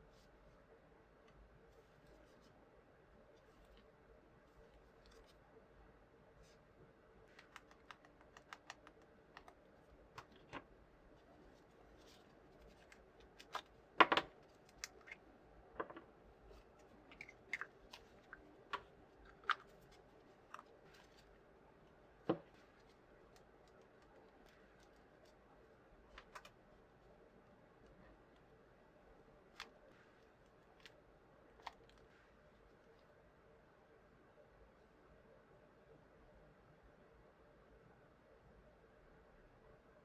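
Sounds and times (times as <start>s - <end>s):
plastic clicks and taps: 7.3s - 9.6s.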